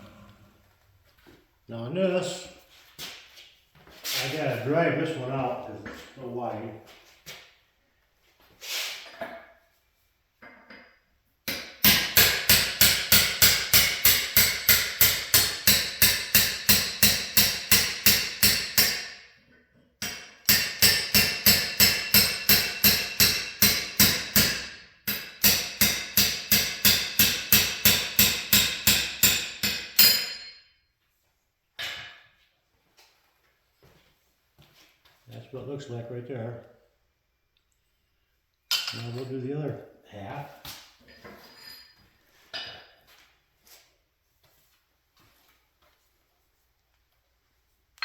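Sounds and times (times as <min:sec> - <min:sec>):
hammer striking steel: 0:11.5 - 0:19.2, 0:20.0 - 0:30.6.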